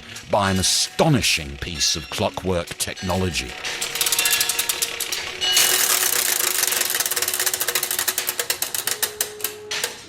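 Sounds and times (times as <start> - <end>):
clockwork gears ticking: 3.0 - 10.0.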